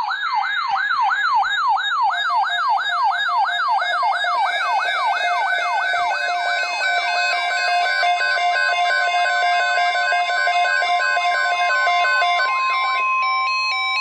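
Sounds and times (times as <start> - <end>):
electronic siren sweeping: 0.0 - 14.0
steady electronic tones: 4.2 - 14.0.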